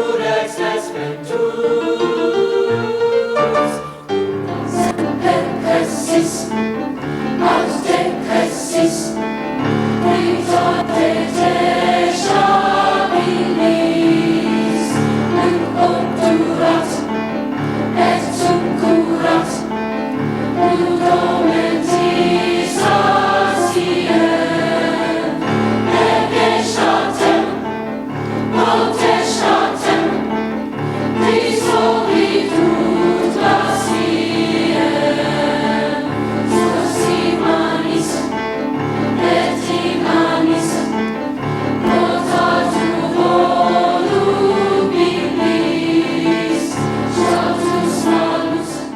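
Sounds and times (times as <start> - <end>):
choir singing: 0.0 - 48.9.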